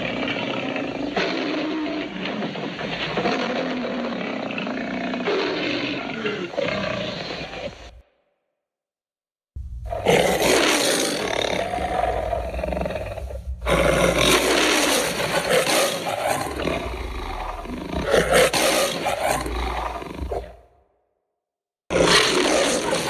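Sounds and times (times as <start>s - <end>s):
monster roars: 0.0s - 7.9s, 9.8s - 20.7s, 21.9s - 23.0s
low rumble: 9.6s - 20.6s.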